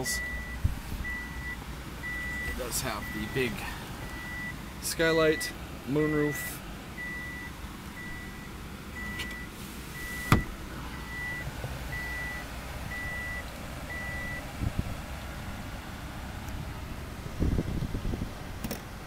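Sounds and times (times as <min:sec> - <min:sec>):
car warning chime beeping: 0:00.0 - 0:14.5.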